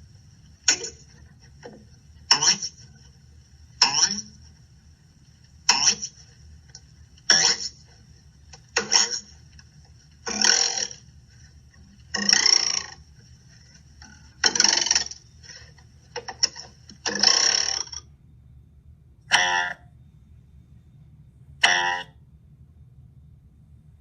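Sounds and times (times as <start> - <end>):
cartoon blip sound effects: 19.3 - 19.8, 21.6 - 22.1.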